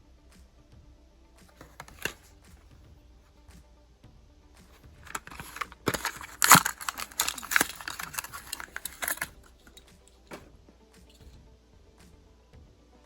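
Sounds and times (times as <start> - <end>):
plastic packaging crackling: 1.6 - 2.2, 5.1 - 9.3.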